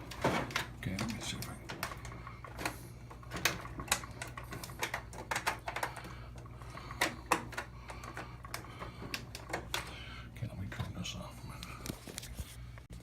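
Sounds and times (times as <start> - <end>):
tools tapping plastic and metal: 0.0 - 10.0
faint steady hum: 0.0 - 13.0.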